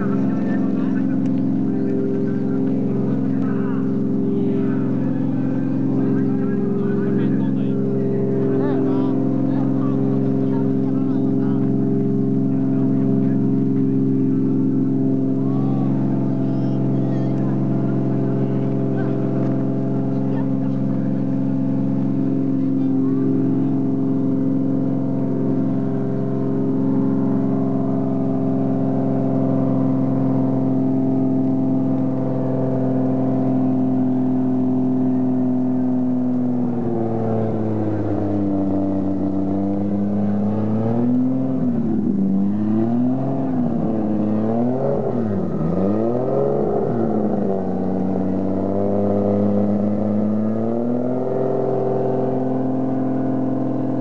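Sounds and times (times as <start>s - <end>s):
car engine revving: 0.0s - 54.0s.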